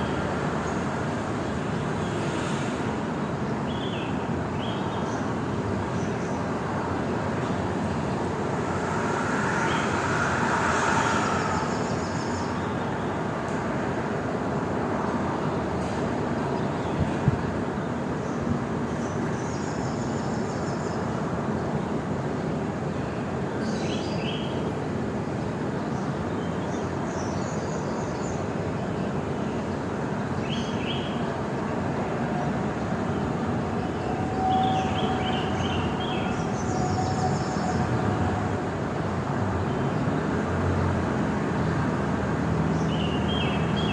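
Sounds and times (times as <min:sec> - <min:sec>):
surf rushing: 0:06.8 - 0:13.4.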